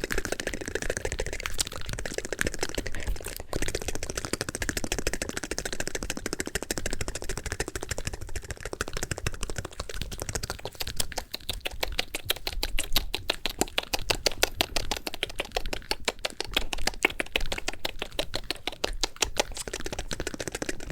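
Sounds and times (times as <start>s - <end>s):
wet mouth clicks and smacks: 0.0s - 20.9s.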